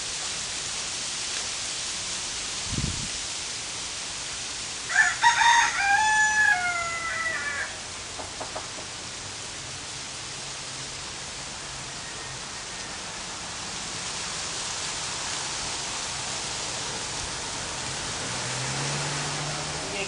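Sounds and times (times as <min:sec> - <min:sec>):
steady hiss: 0:00.0 - 0:20.0
rooster crowing: 0:04.9 - 0:08.9.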